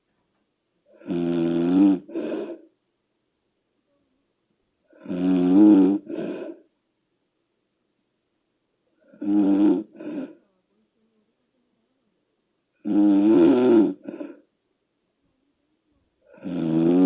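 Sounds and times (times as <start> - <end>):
person snoring loudly: 1.0 - 2.6, 5.0 - 6.6, 9.1 - 10.4, 12.8 - 14.4, 16.3 - 17.0.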